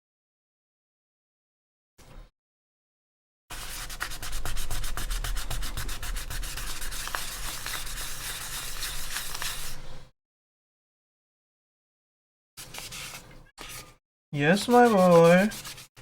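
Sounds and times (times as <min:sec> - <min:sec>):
sandpaper rubbing on plastic: 0:03.5 - 0:09.9, 0:12.6 - 0:16.0.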